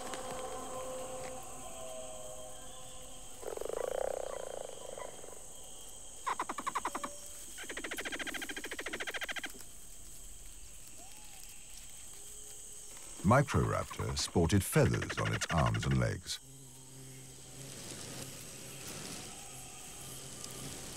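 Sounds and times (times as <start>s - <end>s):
high insect chorus: 0.0s - 20.9s
frog-like croaking calls: 3.4s - 5.4s, 6.2s - 9.6s, 13.6s - 17.2s.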